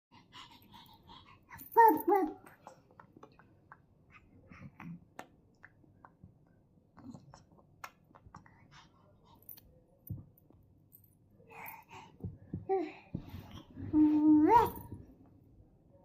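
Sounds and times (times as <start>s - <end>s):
baby babbling: 1.8s - 2.7s
baby mouth clicks and smacking: 2.4s - 8.6s.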